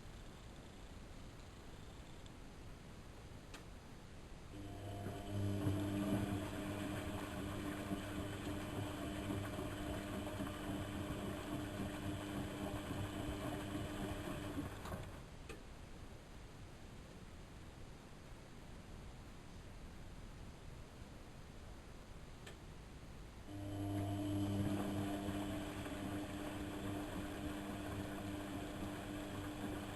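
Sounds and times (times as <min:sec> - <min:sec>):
washing machine motor hum: 0:04.5 - 0:15.3, 0:23.5 - 0:29.9.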